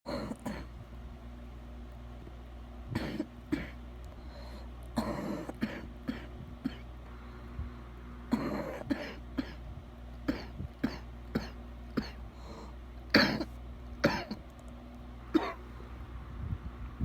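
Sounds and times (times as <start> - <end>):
person wet coughing: 0.1 - 0.7, 3.0 - 3.8, 5.0 - 6.9, 8.3 - 9.6, 10.3 - 12.2, 13.1 - 14.4, 15.3 - 15.6.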